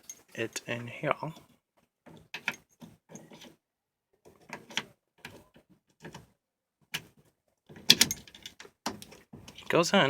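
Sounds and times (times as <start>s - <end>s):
metallic clicks and scrapes: 2.1s - 3.6s.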